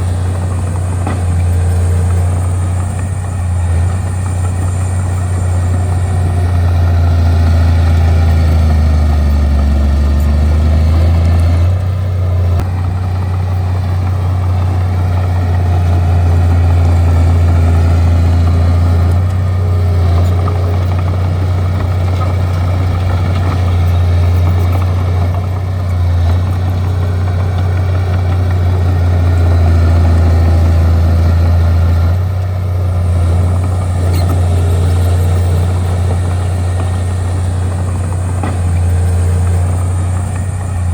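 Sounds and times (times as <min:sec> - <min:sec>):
bulldozer diesel engine droning: 0:00.0 - 0:40.9.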